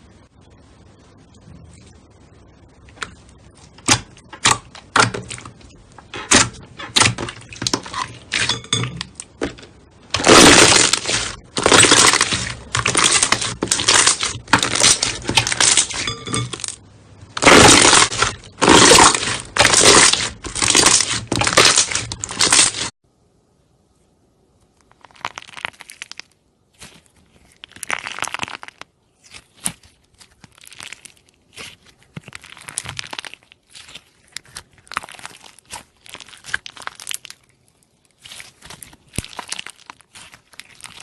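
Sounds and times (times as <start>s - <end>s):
slime crackling and crunching: 2.8s - 23.0s, 24.8s - 41.0s.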